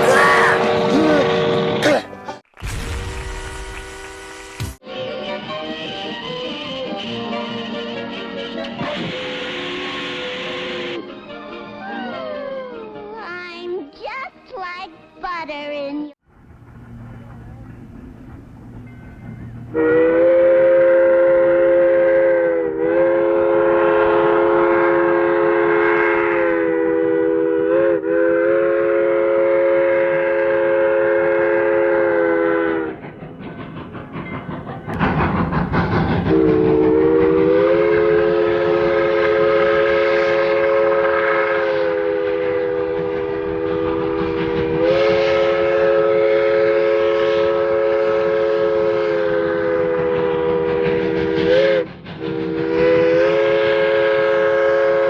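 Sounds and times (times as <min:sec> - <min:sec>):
train horn chord: 0:00.0 - 0:02.4, 0:03.0 - 0:11.7, 0:19.2 - 0:33.0, 0:36.3 - 0:55.0.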